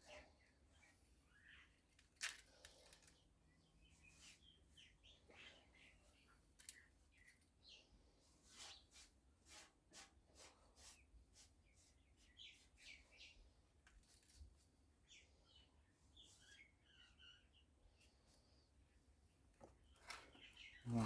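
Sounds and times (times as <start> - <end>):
faint bird chirps: 0.0 - 1.9, 2.8 - 9.0, 11.7 - 13.7, 15.0 - 19.2, 19.8 - 21.0.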